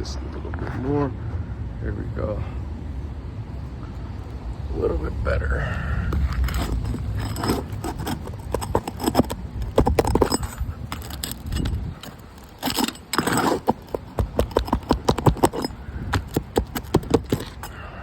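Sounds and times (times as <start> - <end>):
tool scraping roof shingles: 6.1 - 18.0.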